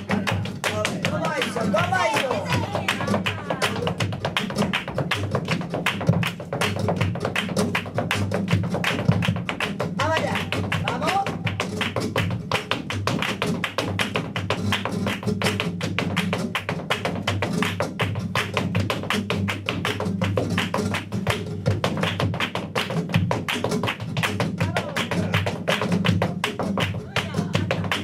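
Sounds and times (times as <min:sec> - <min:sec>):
flamenco footwork on a stage: 0:00.0 - 0:28.0
flamenco guitar: 0:00.0 - 0:28.0.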